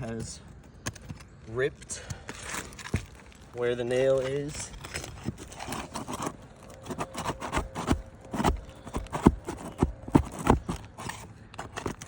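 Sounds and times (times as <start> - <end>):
shingles tearing and rustling: 2.3 - 12.0
nails being pried out: 4.8 - 12.0.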